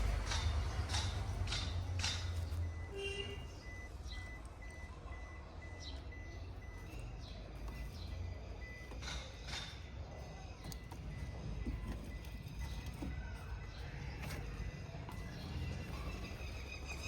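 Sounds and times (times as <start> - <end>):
low rumble with sharp ticks: 0.0 - 2.9
car warning chime beeping: 0.0 - 17.0.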